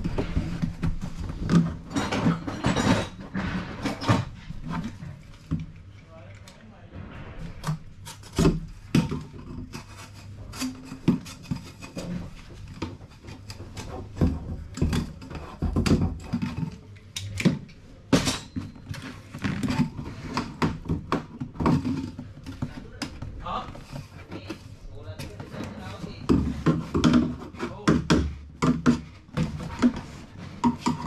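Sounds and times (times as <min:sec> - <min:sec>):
tools knocking and scraping: 0:00.0 - 0:31.0.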